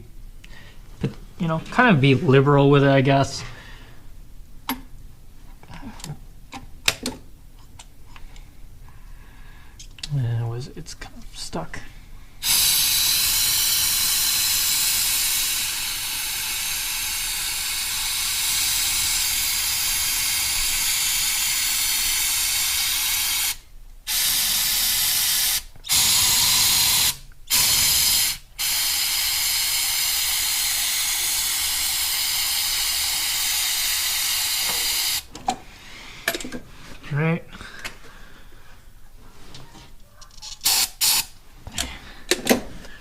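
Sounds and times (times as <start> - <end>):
aerosol can spraying hiss: 12.4 - 35.3, 40.6 - 41.3.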